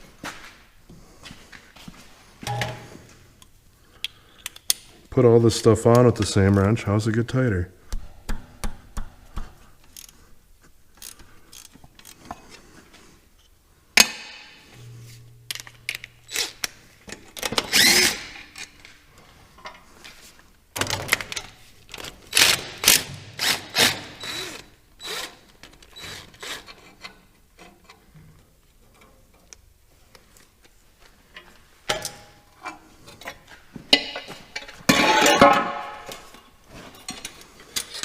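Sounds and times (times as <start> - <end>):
wrench clicking and clanking on metal: 11.0 - 12.2.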